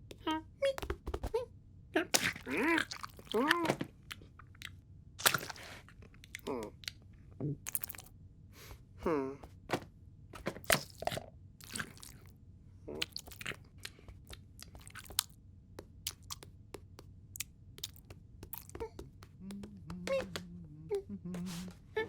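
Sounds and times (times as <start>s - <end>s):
cartoon crunching and chewing: 2.0s - 7.0s, 7.7s - 8.1s, 10.4s - 12.3s, 12.9s - 20.4s.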